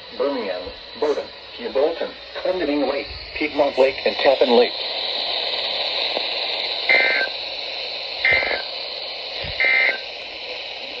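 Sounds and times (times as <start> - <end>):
radio hiss: 0.0 - 11.0
warbling data bursts: 0.2 - 11.0.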